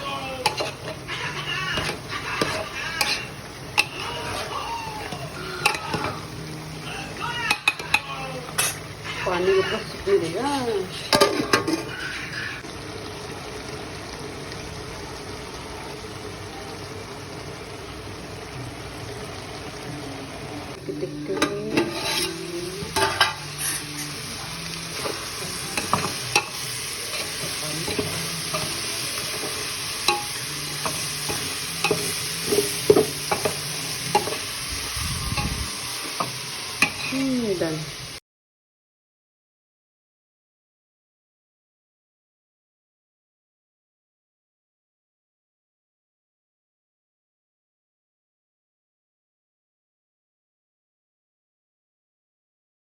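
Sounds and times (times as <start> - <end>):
food sizzling in a pan: 0.0 - 38.2
spatula scraping and stirring: 0.4 - 6.4, 7.5 - 12.6, 21.4 - 37.4.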